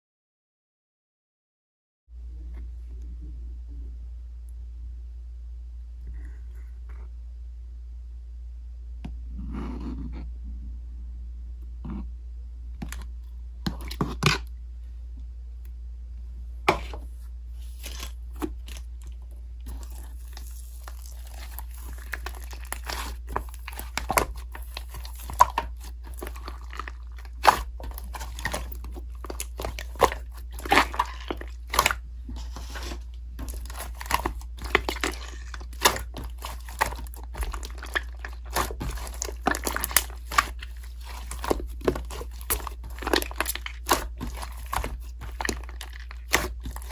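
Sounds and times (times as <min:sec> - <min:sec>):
steady low hum: 0:02.1 - 0:46.9
slime crackling and popping: 0:19.6 - 0:46.9.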